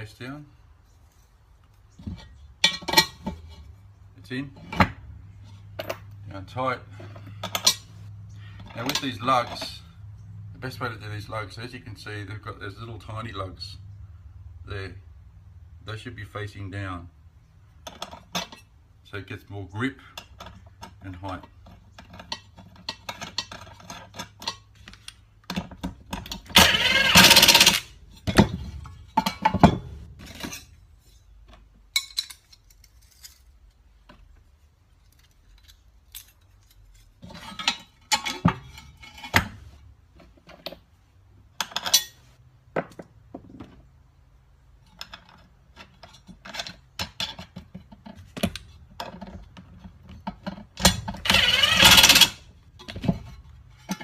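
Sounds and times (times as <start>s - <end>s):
metal parts clinking and knocking: 2.0s - 3.7s, 7.0s - 7.9s, 17.8s - 18.7s, 20.2s - 39.6s, 41.6s - 42.2s, 44.8s - 54.0s.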